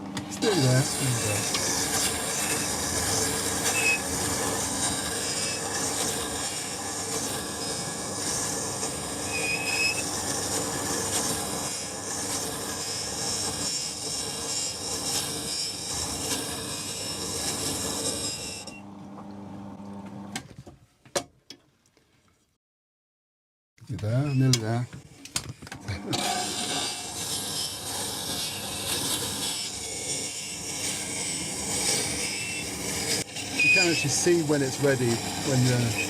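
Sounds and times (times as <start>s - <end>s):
grinder hum: 0.0s - 18.7s, 25.9s - 36.0s.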